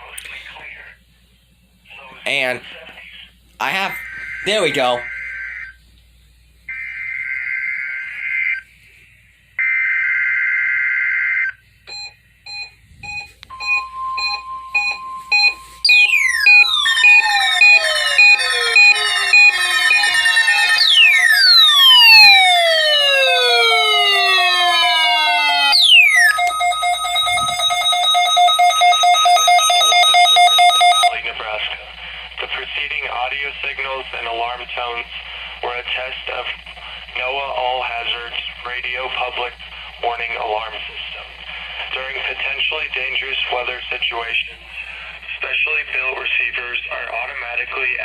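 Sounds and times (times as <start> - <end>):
pulsing alarm tones: 3.8 - 5.8, 9.6 - 31.2
short beeps: 11.9 - 16.7
falling sweep tones: 13.5 - 28.2.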